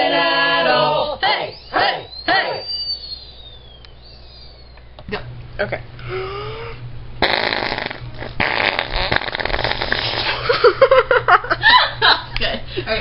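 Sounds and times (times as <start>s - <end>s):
person imitating fart noise: 6.1s - 10.5s.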